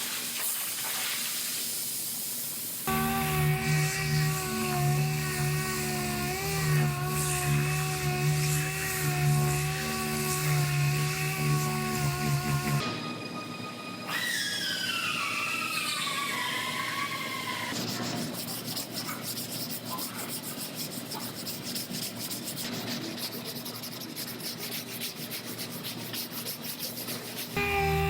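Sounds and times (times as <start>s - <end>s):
power sander whining: 2.9s - 12.8s, 27.6s - 28.0s
sanding rasping on car panel: 2.9s - 12.8s, 17.7s - 28.0s.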